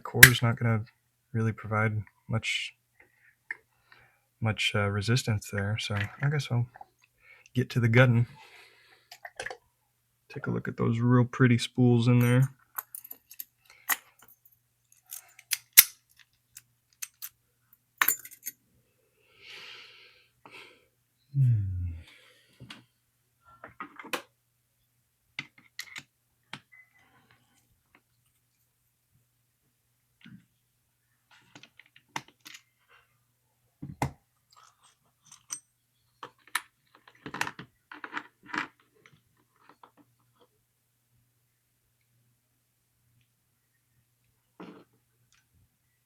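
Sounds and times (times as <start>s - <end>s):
small metal clicks and clinks: 12.2s - 17.4s, 18.0s - 18.6s, 34.5s - 35.7s.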